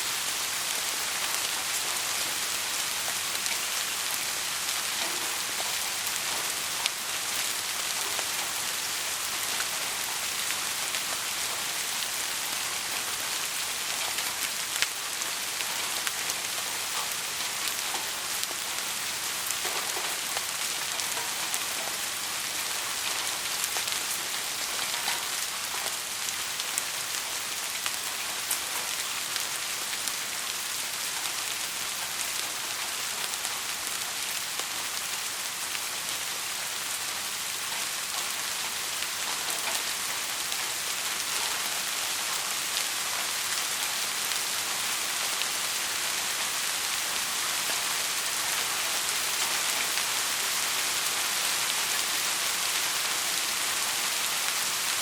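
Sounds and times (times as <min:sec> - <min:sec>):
heavy rain hissing: 0:00.0 - 0:55.0
raindrop ticks: 0:03.1 - 0:12.1, 0:12.8 - 0:26.8.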